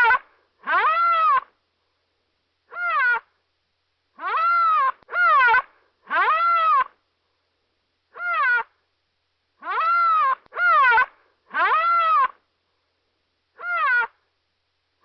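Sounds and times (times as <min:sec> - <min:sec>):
animal-like cry: 0:00.0 - 0:01.5, 0:02.7 - 0:03.3, 0:04.2 - 0:07.0, 0:08.1 - 0:08.8, 0:09.6 - 0:12.4, 0:13.6 - 0:14.2.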